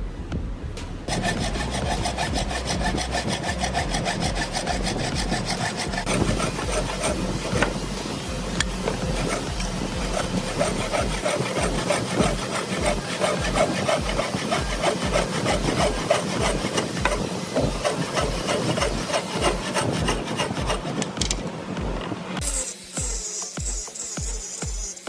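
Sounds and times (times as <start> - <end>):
hand rubbing wood: 0.8 - 21.5.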